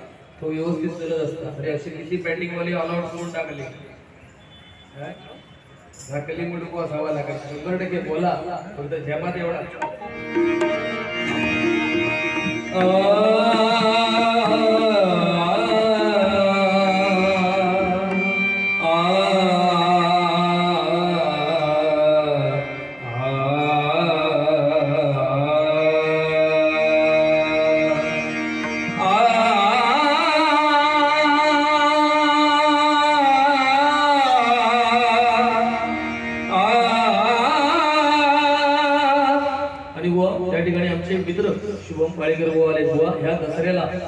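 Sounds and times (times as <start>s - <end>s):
instrumental and drum accompaniment: 9.5s - 20.2s, 27.6s - 30.7s
person singing devotional song: 10.2s - 40.0s.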